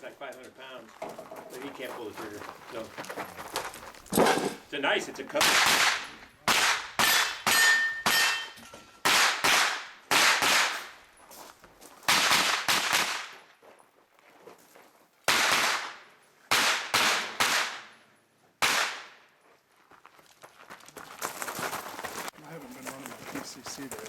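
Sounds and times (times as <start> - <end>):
gunshots: 5.4 - 11.0, 12.1 - 13.4, 15.3 - 17.9, 18.6 - 19.2
steel target ringing: 7.0 - 9.1.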